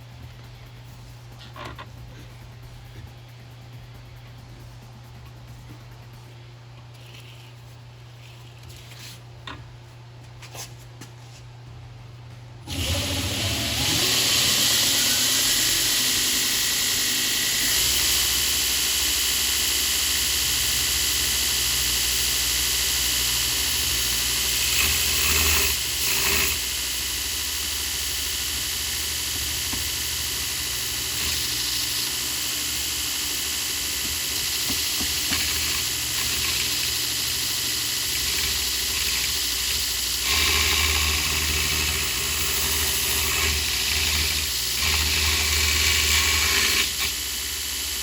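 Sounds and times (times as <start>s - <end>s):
electric power tool motor whining: 12.7s - 48.0s.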